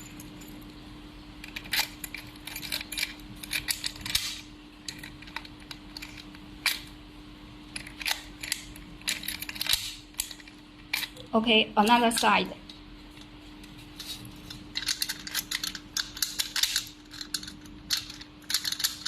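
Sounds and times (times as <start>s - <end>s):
faint steady hum: 0.0s - 19.0s.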